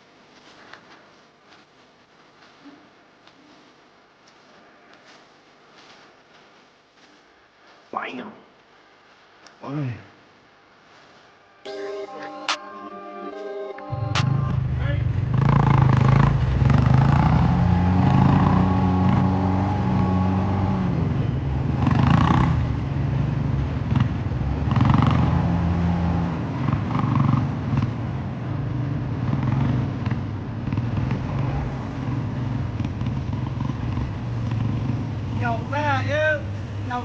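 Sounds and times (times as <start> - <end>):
dirt bike engine running: 14.0 - 37.0.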